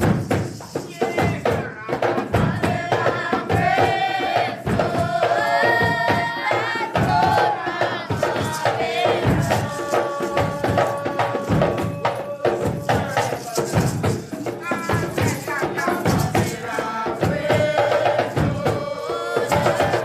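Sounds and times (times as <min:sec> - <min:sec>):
tambourine: 0:00.0 - 0:07.4, 0:08.1 - 0:20.0
hand percussion beat: 0:00.0 - 0:20.0
group chanting in unison: 0:00.9 - 0:20.0.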